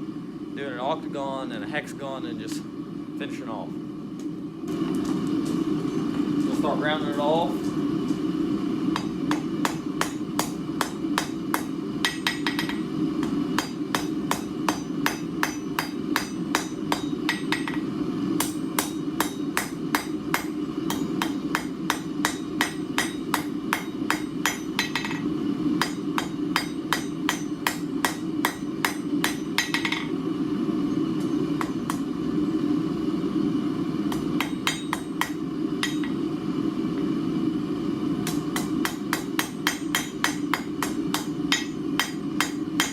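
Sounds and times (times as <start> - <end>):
hammer ringing on anvil: 9.0 - 30.1, 31.2 - 32.0, 34.1 - 36.2, 38.2 - 42.9.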